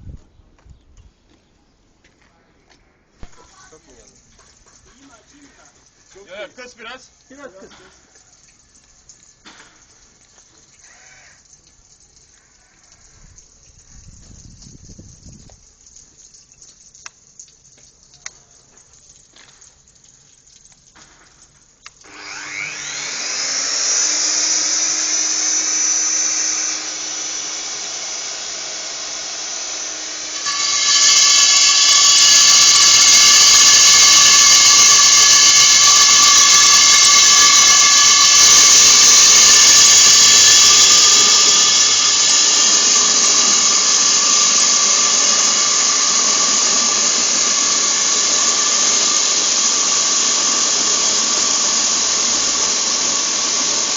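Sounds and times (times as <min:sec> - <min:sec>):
core drill drilling concrete: 0:21.8 - 0:53.9
high-pitched drill whine: 0:22.0 - 0:53.9.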